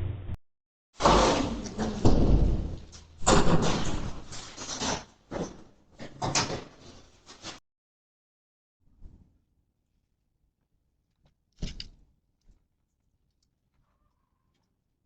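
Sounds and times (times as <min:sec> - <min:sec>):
door banging and rattling: 0:01.0 - 0:07.0.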